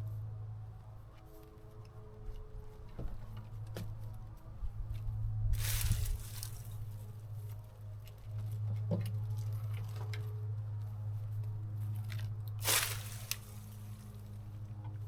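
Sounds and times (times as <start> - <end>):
steady low hum: 0.0 - 15.0
branches crackling and tearing: 5.5 - 7.1, 12.0 - 14.5
rustling crunch: 5.6 - 7.2, 11.8 - 14.6.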